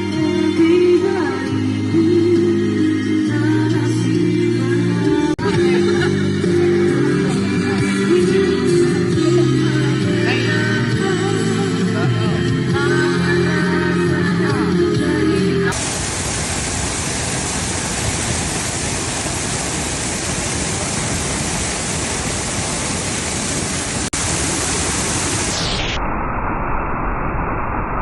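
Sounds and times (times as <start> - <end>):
waterfall roaring: 15.7 - 25.8.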